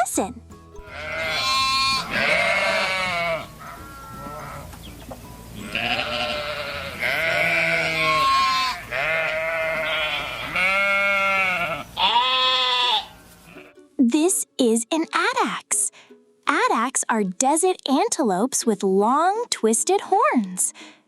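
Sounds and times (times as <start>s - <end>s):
sheep bleating: 0.8s - 4.8s, 5.6s - 13.8s.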